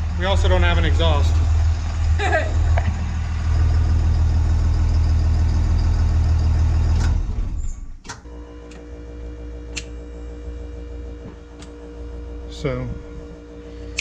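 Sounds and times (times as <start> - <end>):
diesel engine running: 0.0 - 8.1.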